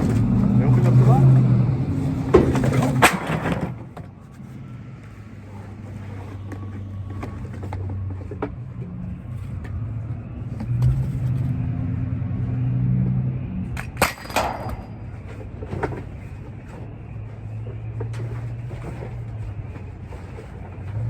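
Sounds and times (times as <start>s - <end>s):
objects clunking and knocking: 0.0s - 21.0s
vehicle engine running: 0.0s - 21.0s.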